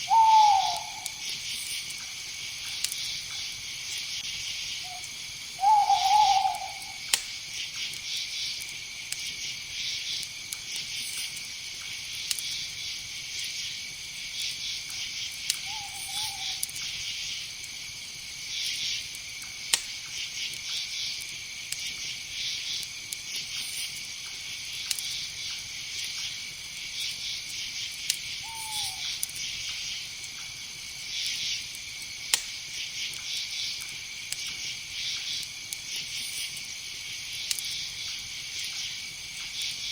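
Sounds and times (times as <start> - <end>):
owl-like hooting calls: 0.0 - 1.3, 4.8 - 7.1, 15.6 - 16.7, 28.4 - 29.2
crickets chirping: 0.0 - 39.9.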